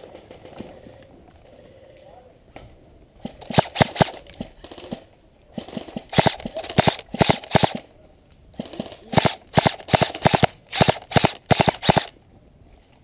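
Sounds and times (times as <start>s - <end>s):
airsoft guns firing: 3.3s - 7.9s, 8.6s - 12.2s.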